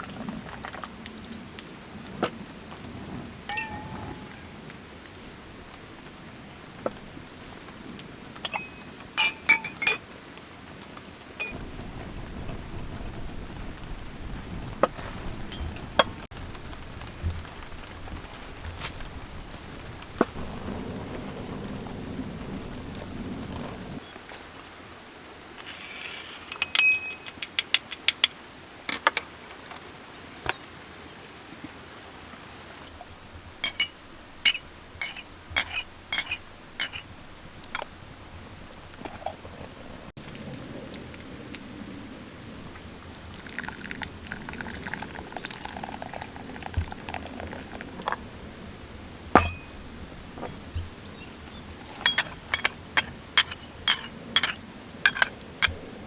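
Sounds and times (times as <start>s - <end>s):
rain hiss: 0.0s - 56.0s
cookware and utensils clinking: 3.5s - 4.7s, 8.4s - 10.1s, 11.4s - 11.6s, 26.4s - 27.5s, 32.8s - 38.0s, 49.4s - 50.9s, 51.8s - 55.8s.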